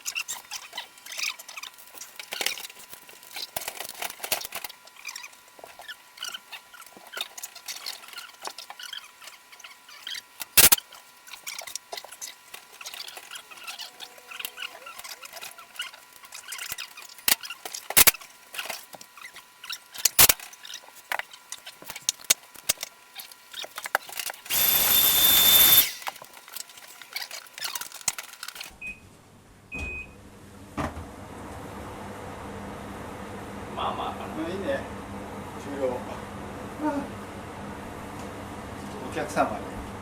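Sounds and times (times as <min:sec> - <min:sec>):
power driver running: 0:24.4 - 0:26.3
clicks and knocks of parts: 0:25.6 - 0:28.7.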